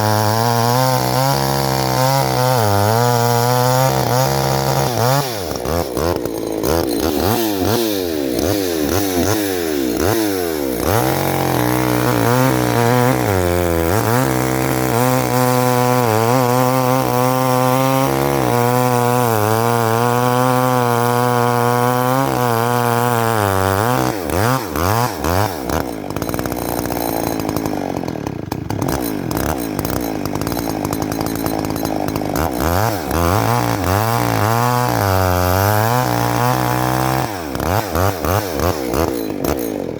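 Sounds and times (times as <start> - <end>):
chainsaw cutting into tree: 0.0 - 39.9.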